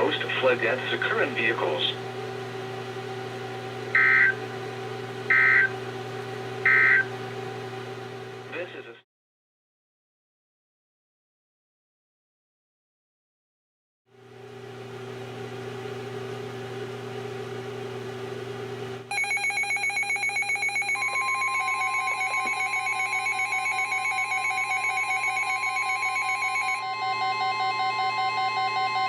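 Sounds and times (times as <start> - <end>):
radio channel hum: 0.0 - 3.1, 3.8 - 4.6, 5.2 - 6.0, 6.6 - 7.2, 8.5 - 9.0
steady warning alert tone: 3.9 - 4.4, 5.3 - 5.7, 6.6 - 7.1, 19.1 - 29.0
fast pulsing electronic beeping: 4.0 - 4.4, 6.7 - 7.1, 19.9 - 26.8.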